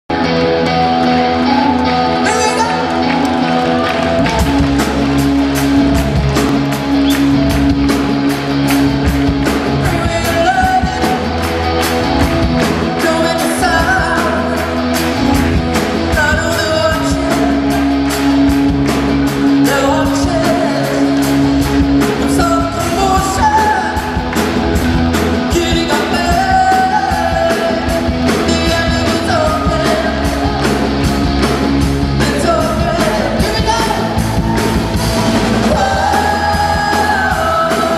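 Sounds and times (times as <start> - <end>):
live pop band: 0.1 - 37.9
man singing: 9.5 - 11.4, 12.6 - 17.9, 19.5 - 24.4, 25.3 - 30.8, 32.1 - 34.8, 35.6 - 37.9.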